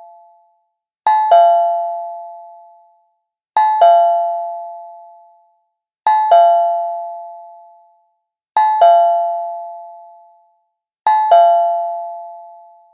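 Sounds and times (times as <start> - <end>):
two-note doorbell chime: 1.1 - 2.5, 3.6 - 5.0, 6.1 - 7.7, 8.6 - 10.2, 11.1 - 12.9.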